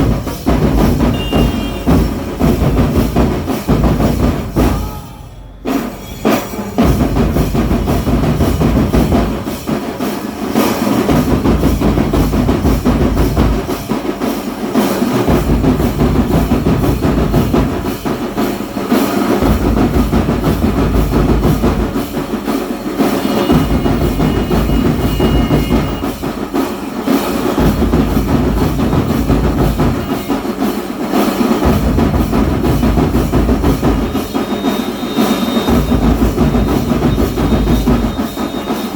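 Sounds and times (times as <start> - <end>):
music with heavy bass drum beat: 0.0 - 38.9.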